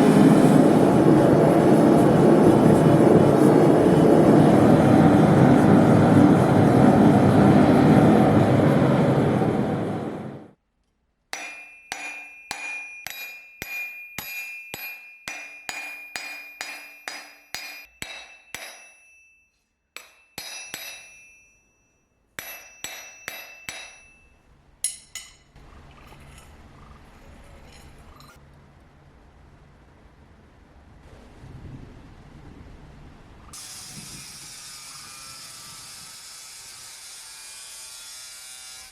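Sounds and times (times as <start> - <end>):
hammer ringing on metal: 11.4 - 25.5.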